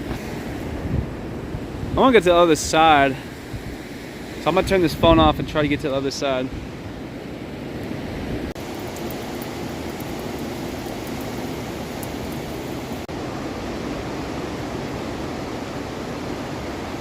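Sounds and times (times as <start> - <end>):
wind on microphone: 0.0 - 2.1
ocean surf on rocky shore: 0.0 - 17.0.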